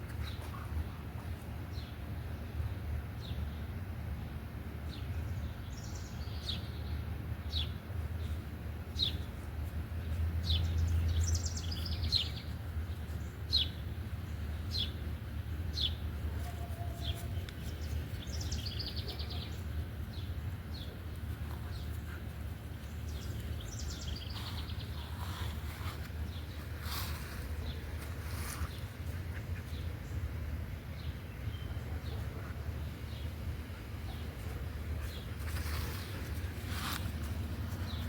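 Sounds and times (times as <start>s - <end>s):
birds chirping: 10.0s - 38.0s.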